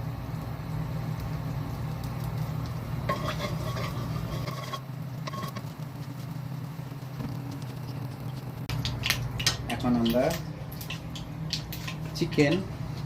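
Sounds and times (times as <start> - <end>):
low hum: 0.0 - 13.0
oil sizzling in a frying pan: 0.0 - 13.0
scrape in a pan: 3.0 - 5.7.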